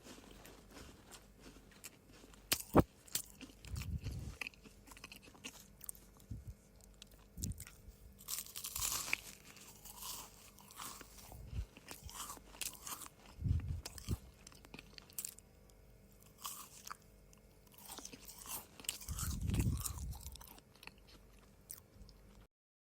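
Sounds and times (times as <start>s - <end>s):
cookie crunching and chewing: 0.0s - 22.5s.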